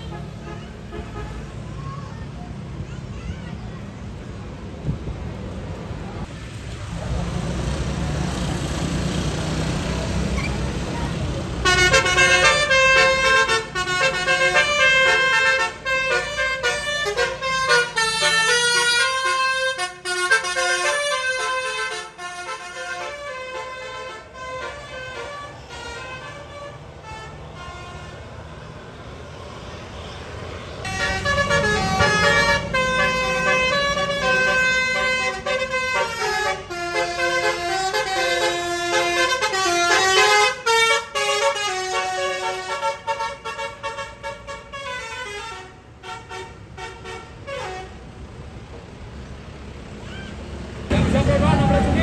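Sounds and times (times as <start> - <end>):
musical bus air horn: 0.0 - 1.7, 11.6 - 28.4, 30.8 - 48.2
bus engine rumble: 0.0 - 52.0.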